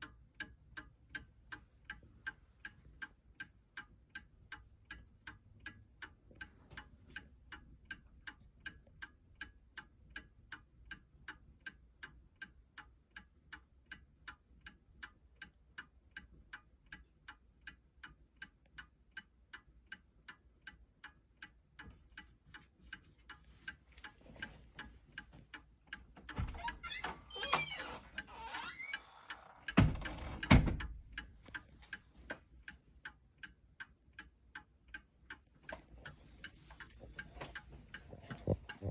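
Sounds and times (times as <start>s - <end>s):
clock ticking quickly: 29.3s - 38.9s.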